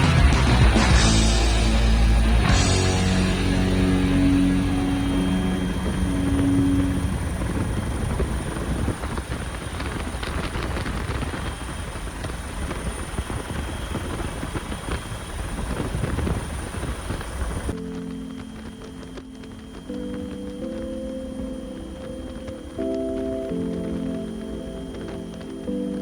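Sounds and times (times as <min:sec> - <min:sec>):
background music: 0:00.0 - 0:08.6, 0:17.7 - 0:26.0
helicopter rotor beating: 0:00.0 - 0:20.4.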